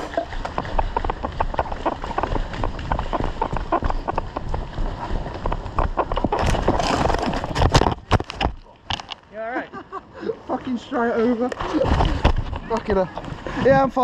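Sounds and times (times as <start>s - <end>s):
running footsteps: 0.0s - 8.6s.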